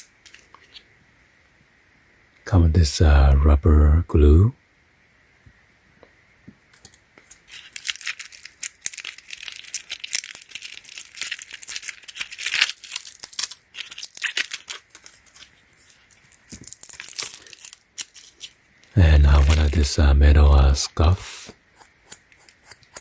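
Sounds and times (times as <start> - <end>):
plastic packaging rustling: 7.2 - 18.6.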